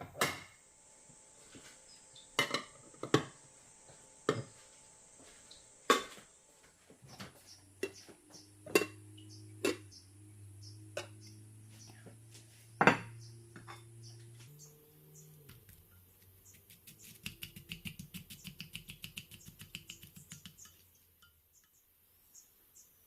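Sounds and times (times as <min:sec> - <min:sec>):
quick light taps: 0:17.1 - 0:20.8.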